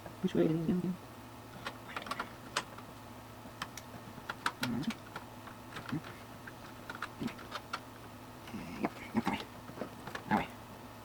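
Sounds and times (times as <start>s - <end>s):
low murmurs: 8.4s - 9.6s.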